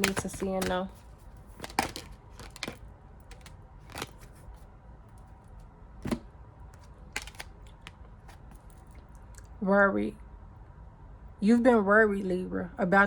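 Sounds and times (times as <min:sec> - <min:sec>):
cards tapping and flicking: 0:00.0 - 0:01.0, 0:01.6 - 0:04.3, 0:06.8 - 0:08.6.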